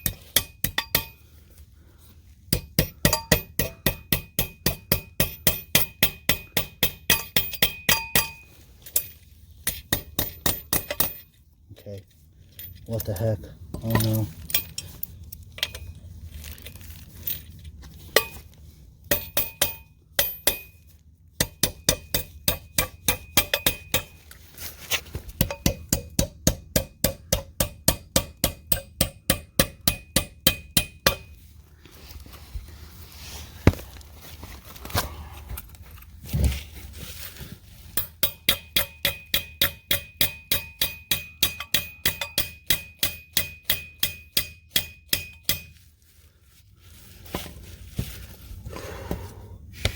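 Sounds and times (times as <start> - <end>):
hammer striking metal anchors: 0.0 - 1.2, 2.5 - 11.3, 18.1 - 18.5, 19.1 - 20.8, 21.4 - 24.2, 25.3 - 31.4, 38.0 - 45.8.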